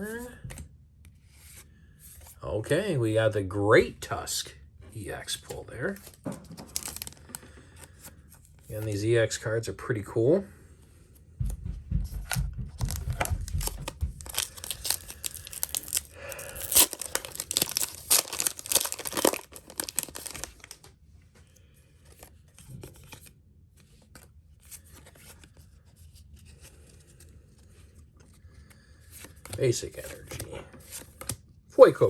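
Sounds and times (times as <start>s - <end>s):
foil pack tearing and crinkling: 6.7s - 7.3s, 12.9s - 20.8s.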